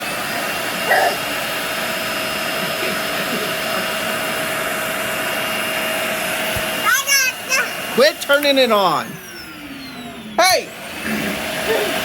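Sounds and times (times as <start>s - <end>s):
vacuum cleaner running: 0.0s - 12.0s
toddler yelling: 6.8s - 7.8s.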